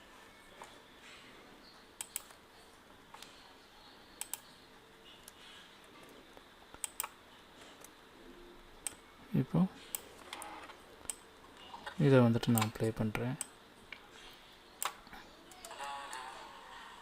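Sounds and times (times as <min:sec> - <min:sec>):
computer mouse and keyboard clicks: 0:02.0 - 0:02.4, 0:06.7 - 0:07.2.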